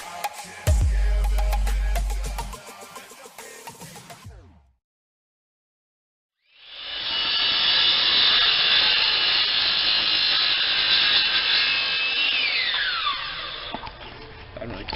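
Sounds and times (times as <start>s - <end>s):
circular saw whining: 6.4s - 13.9s.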